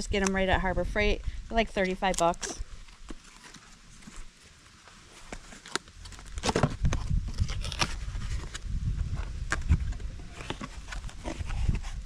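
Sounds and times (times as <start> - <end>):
box handling knocks and rustles: 6.1 - 7.2.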